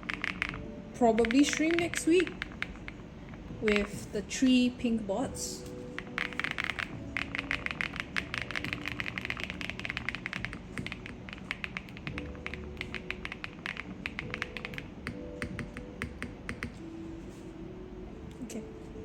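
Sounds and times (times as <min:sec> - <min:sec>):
quiet background music: 0:00.0 - 0:19.0
mechanical keyboard key clacks: 0:06.0 - 0:16.8.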